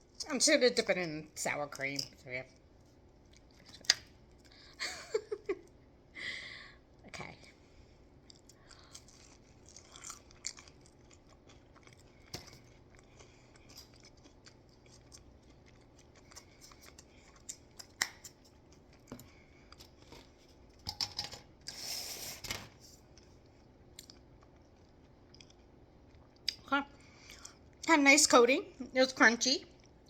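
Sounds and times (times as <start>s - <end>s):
crunching and chewing: 2.5s - 4.8s, 8.1s - 20.8s, 23.0s - 27.9s.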